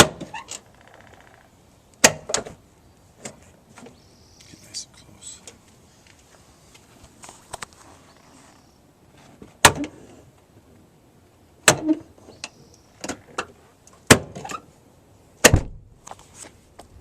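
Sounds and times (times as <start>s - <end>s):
car door popping: 15.4s - 15.9s.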